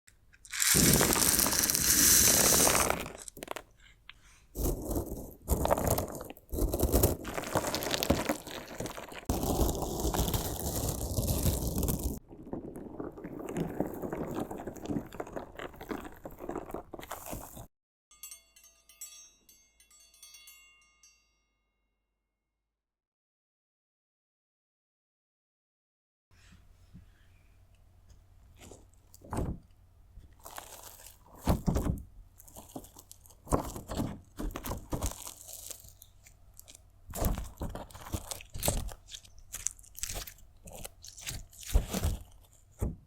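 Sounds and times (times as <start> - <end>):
crunchy slime being cut: 4.6 - 12.2, 32.5 - 42.4.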